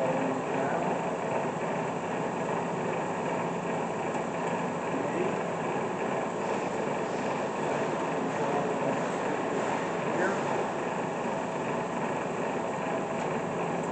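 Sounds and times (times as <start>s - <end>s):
milling machine running: 0.0s - 13.9s.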